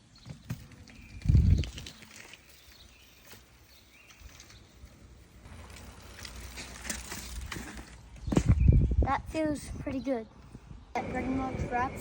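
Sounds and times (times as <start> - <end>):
bike tyres rolling rumble: 0.0 - 9.0.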